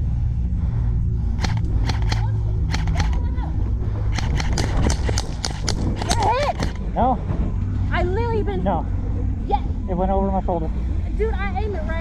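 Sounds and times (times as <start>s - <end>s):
low rumble: 0.0s - 12.0s
airsoft guns firing: 1.4s - 3.3s, 4.1s - 6.8s.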